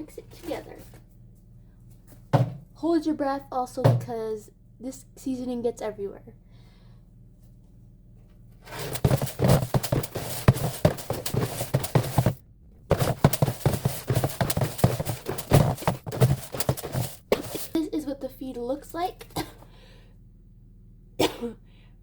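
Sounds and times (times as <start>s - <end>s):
dry grain feed rattling: 8.7s - 17.8s.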